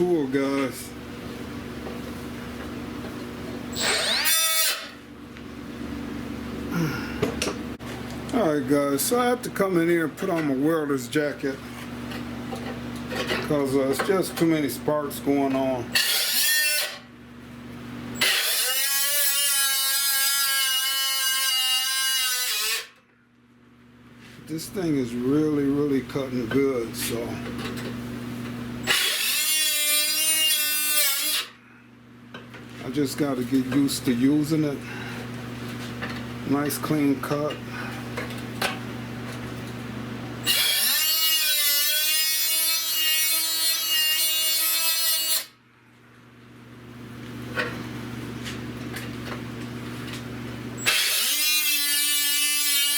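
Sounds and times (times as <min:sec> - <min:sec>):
electric metal cutter whining: 0:03.7 - 0:05.0, 0:15.9 - 0:17.1, 0:18.1 - 0:23.0, 0:28.8 - 0:31.6, 0:40.4 - 0:45.6, 0:50.8 - 0:52.9.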